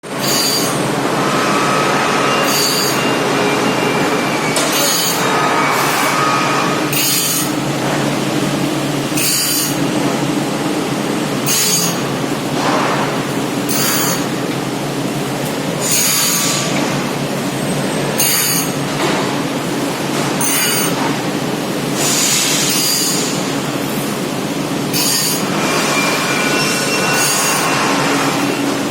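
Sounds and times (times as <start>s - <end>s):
grinding machine running: 0.0s - 28.9s
high metallic screech: 0.2s - 7.6s, 11.4s - 12.1s, 22.0s - 23.4s, 24.9s - 28.4s.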